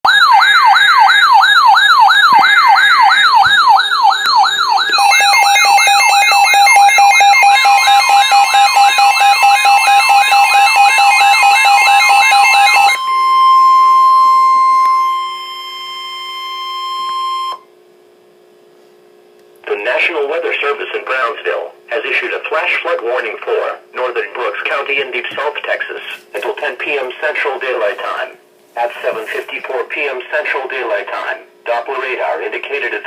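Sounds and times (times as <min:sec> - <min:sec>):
alternating alarm tones: 0:00.0 - 0:17.7
electronic siren wailing: 0:00.0 - 0:17.7
steady high alert tone: 0:00.4 - 0:17.6.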